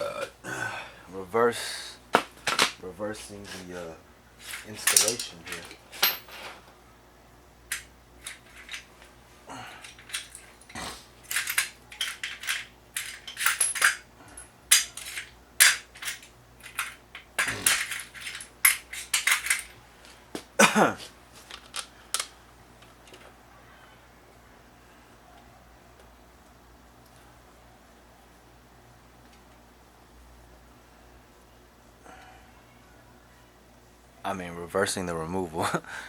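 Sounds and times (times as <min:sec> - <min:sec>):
metal tools and parts clanking: 0:04.4 - 0:06.6, 0:07.7 - 0:08.9, 0:09.8 - 0:19.7.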